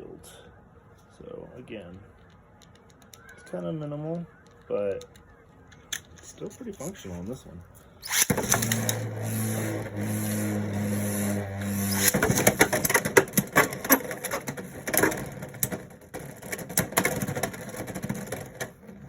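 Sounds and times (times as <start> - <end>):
spinning tops whining: 8.0 - 15.4.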